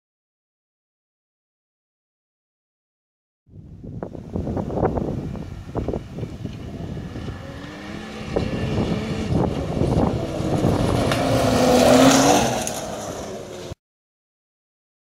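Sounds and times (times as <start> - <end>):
snowmobile passing under throttle: 4.4 - 13.8.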